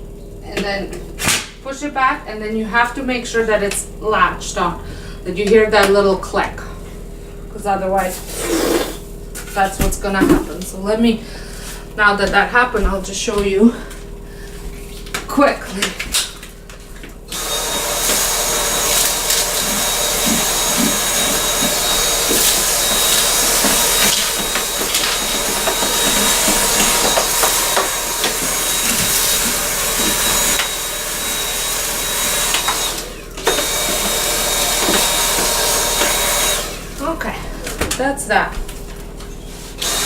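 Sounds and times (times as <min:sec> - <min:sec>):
vacuum cleaner running: 0:00.8 - 0:40.0
debris rattling in vacuum: 0:15.6 - 0:37.8.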